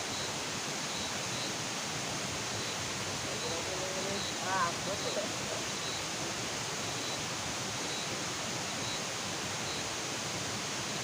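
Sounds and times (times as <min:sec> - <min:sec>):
night swamp ambience hiss: 0:00.0 - 0:11.0
faint high chirp: 0:02.6 - 0:06.1, 0:06.9 - 0:07.2, 0:07.8 - 0:09.9.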